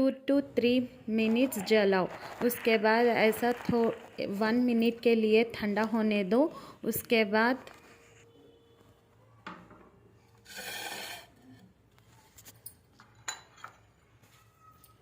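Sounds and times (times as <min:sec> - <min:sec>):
kitchenware clinking: 0:12.6 - 0:14.0.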